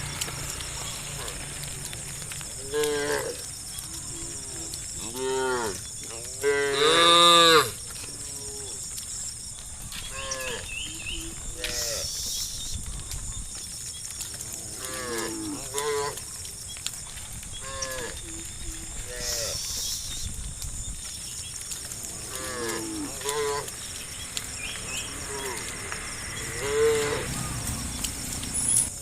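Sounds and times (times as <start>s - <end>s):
cows mooing: 2.4s - 8.8s, 10.1s - 12.1s, 14.3s - 16.3s, 17.6s - 19.7s, 21.7s - 27.7s.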